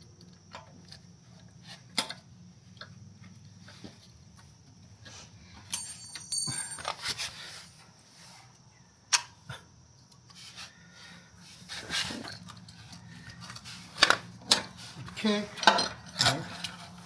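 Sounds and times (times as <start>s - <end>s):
metal hardware clinking: 5.7s - 7.2s.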